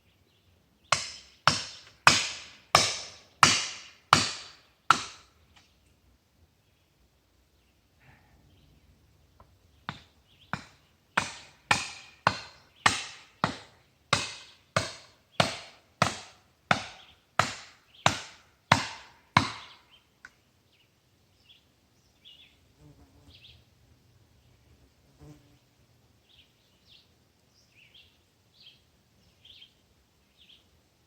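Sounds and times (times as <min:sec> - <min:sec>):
axe chopping wood: 0:01.0 - 0:05.3, 0:09.9 - 0:19.8
faint insect or bird chirps: 0:20.6 - 0:31.0.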